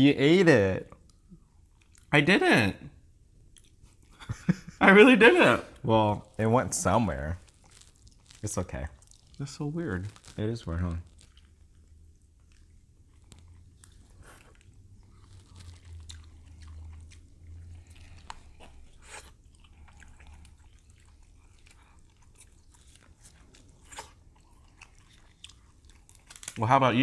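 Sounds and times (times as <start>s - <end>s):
person chewing: 1.0s - 2.1s, 3.5s - 4.3s, 7.3s - 10.4s, 11.0s - 26.6s
small clicks and crackles: 7.4s - 17.0s, 25.0s - 26.7s.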